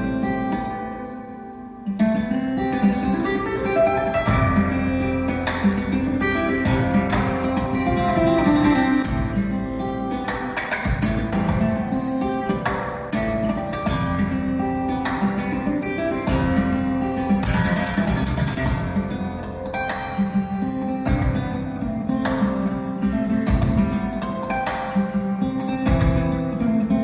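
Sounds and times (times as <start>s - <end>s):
acoustic guitar music over loudspeakers: 0.0s - 27.0s.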